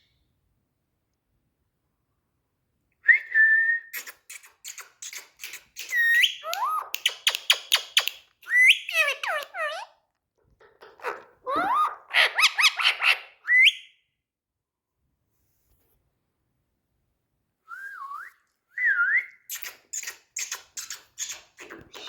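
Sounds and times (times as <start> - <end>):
parrot whistling and chattering: 3.9 - 9.9, 11.0 - 13.9, 19.4 - 22.0.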